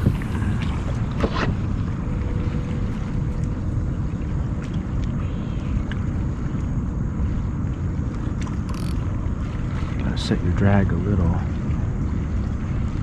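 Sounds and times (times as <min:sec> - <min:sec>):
wind buffeting microphone: 0:00.0 - 0:13.0
faint ticks: 0:08.1 - 0:09.0.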